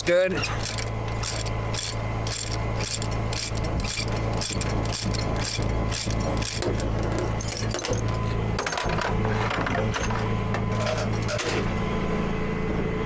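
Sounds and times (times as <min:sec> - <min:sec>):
steady low hum: 0:00.0 - 0:13.0
ratchet pawl clicking: 0:00.6 - 0:07.2.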